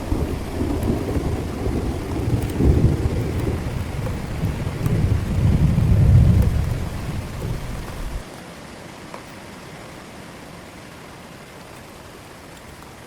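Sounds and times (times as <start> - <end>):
rolling thunder rumble: 0.0 - 8.3
heavy rain: 0.0 - 13.0.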